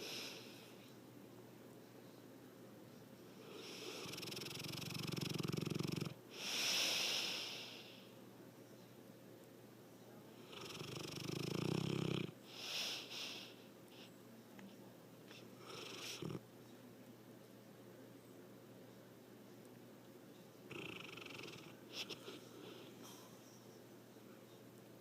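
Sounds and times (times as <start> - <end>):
hissing breath: 6.3 - 8.1, 12.5 - 14.1.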